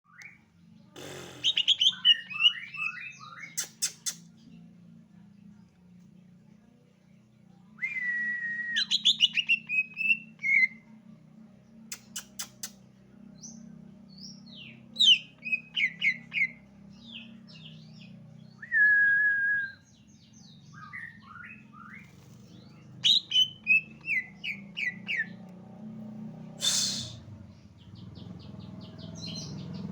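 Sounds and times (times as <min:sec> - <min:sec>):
bird singing whistles: 0:07.8 - 0:10.7, 0:18.6 - 0:19.9
short noisy burst: 0:26.6 - 0:27.2.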